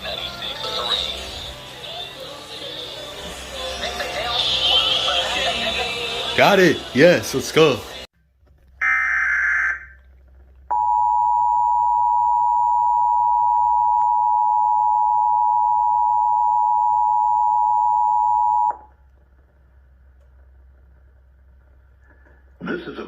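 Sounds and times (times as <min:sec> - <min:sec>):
two-tone alert signal: 0:08.8 - 0:10.0, 0:10.7 - 0:18.8.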